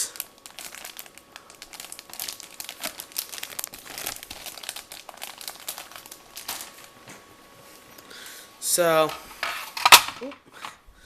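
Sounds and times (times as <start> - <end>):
plastic bag crinkling: 0.0 - 7.1.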